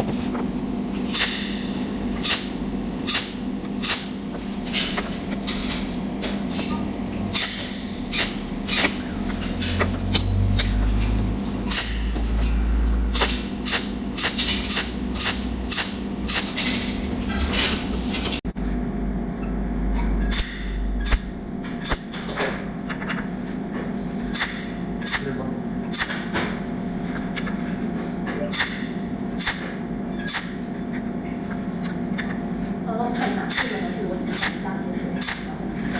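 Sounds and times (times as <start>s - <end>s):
steady hum: 0.0s - 35.9s
spot welder snapping clicks: 2.2s - 4.2s, 13.1s - 16.6s, 20.3s - 22.2s, 24.3s - 25.3s, 25.9s - 26.3s, 29.4s - 29.7s, 30.3s - 30.6s, 35.2s - 35.5s.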